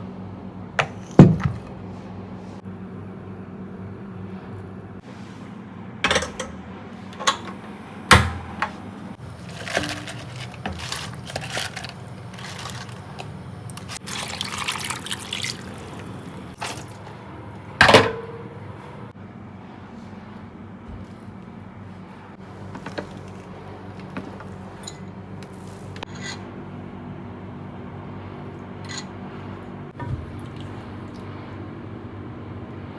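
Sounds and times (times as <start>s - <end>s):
steady low hum: 0.0s - 32.9s
liquid pouring: 10.6s - 17.2s.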